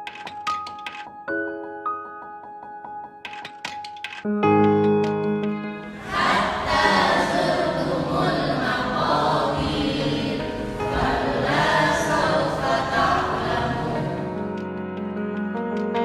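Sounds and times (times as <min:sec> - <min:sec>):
choir singing: 0:05.9 - 0:14.5.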